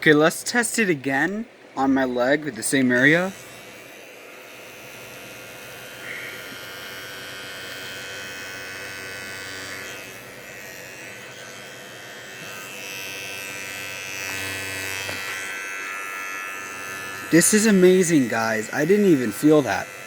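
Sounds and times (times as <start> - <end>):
electric body trimmer buzzing: 2.7 - 20.0.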